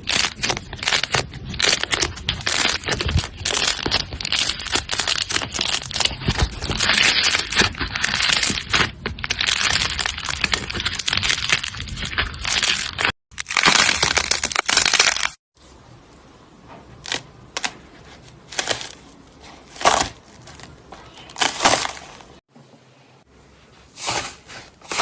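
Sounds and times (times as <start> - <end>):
slime crackling and popping: 0.0 - 15.4.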